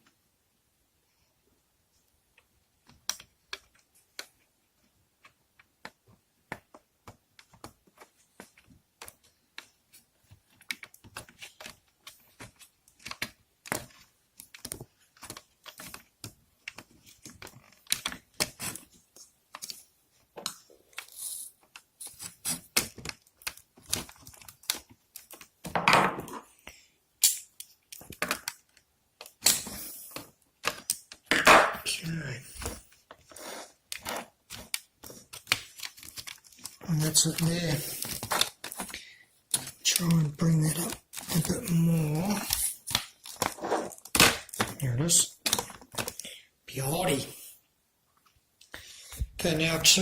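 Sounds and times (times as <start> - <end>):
plastic parts clicking: 5.2 - 26.6, 27.2 - 31.4, 32.6 - 46.3
rustling scrapes: 32.5 - 34.3, 42.4 - 44.1.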